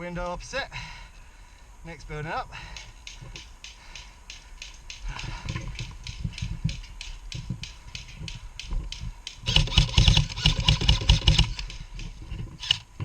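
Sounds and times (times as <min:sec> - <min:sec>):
sharp clicks: 0:02.6 - 0:12.9
airsoft rifle full-auto burst: 0:09.3 - 0:12.9.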